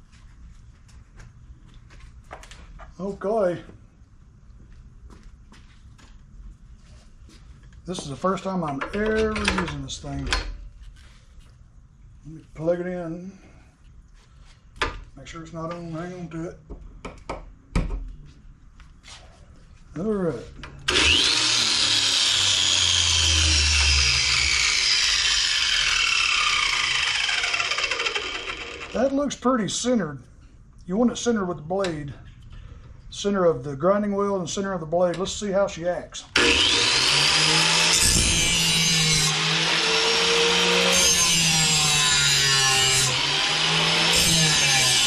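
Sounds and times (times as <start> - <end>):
angle grinder high whine: 20.9 - 29.2, 36.3 - 45.0.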